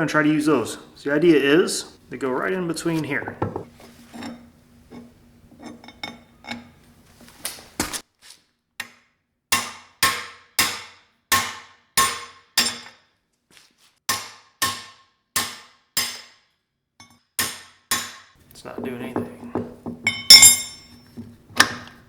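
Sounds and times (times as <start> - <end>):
hammer striking metal: 9.5 - 13.0, 14.1 - 16.4, 17.0 - 18.3, 19.2 - 21.0.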